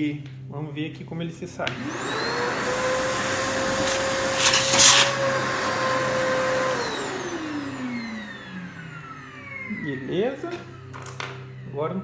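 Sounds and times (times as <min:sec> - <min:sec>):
vacuum cleaner motor whine: 0:01.6 - 0:12.0
sawdust sucked up hose: 0:01.8 - 0:08.5.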